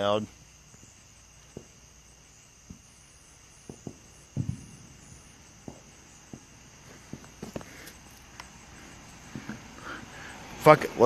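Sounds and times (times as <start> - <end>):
crickets chirring: 0.0 - 11.0
firecrackers crackling: 0.0 - 11.0
loud crack with low thud: 3.7 - 5.0.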